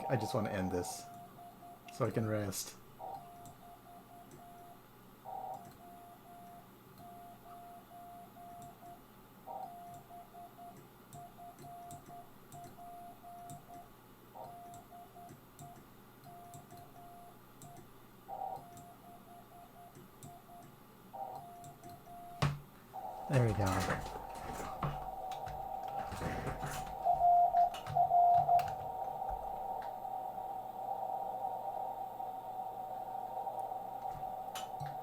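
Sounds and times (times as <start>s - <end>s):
morse code tone: 1.0s - 2.0s, 23.0s - 28.9s.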